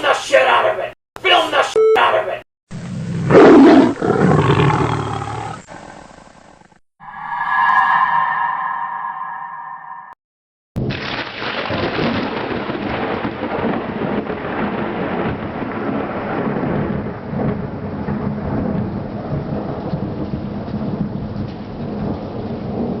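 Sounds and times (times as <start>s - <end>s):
heavy rain: 10.8s - 23.0s
low rolling thunder: 10.8s - 23.0s.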